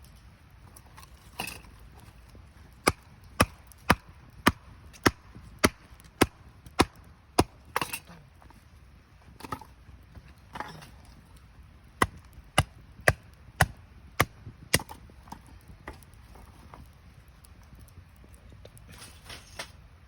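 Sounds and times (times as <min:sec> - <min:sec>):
faint campfire burning: 0:00.0 - 0:20.0
sharp wooden cracks: 0:02.7 - 0:08.1.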